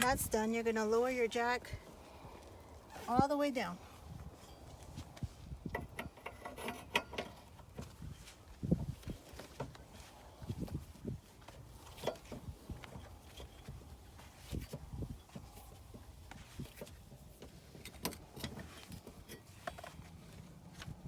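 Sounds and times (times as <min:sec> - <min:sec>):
metallic clicks and knocks: 0:05.7 - 0:07.5.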